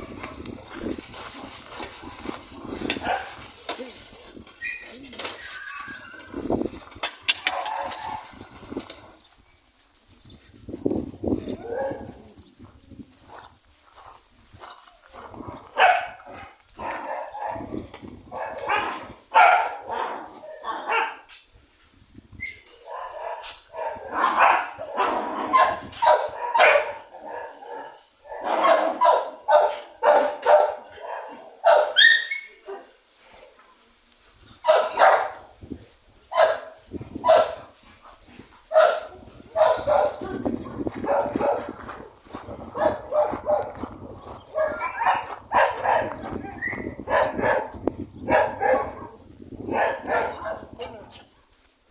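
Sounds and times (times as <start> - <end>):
dogs barking: 2.2 - 8.7, 11.3 - 12.3, 15.2 - 21.3, 22.8 - 33.0, 34.6 - 35.6, 36.3 - 37.8, 38.6 - 51.1.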